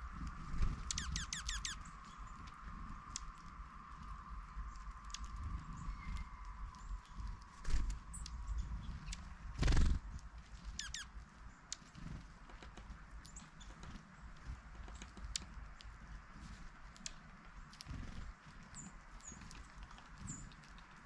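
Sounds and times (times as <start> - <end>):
woodpecker tapping on wood: 11.7 - 15.9.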